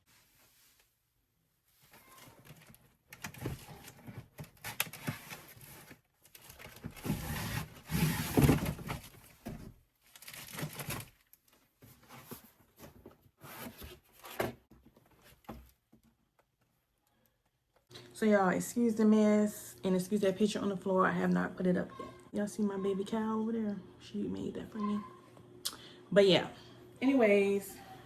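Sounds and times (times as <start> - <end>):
rustling and crinkling: 0.0 - 16.9.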